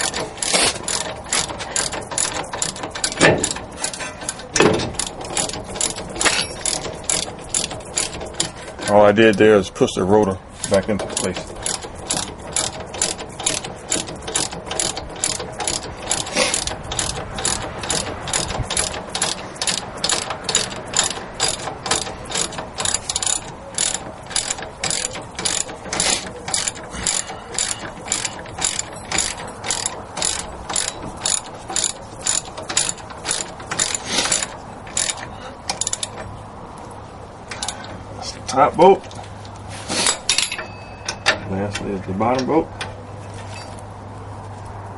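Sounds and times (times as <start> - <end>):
socket ratchet clicking: 10.7 - 36.3.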